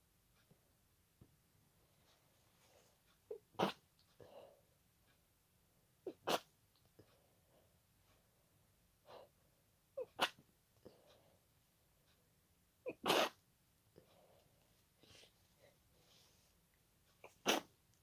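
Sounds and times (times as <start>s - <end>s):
person sneezing: 12.9s - 13.4s, 17.2s - 17.7s
sniffs and breaths: 14.0s - 16.6s.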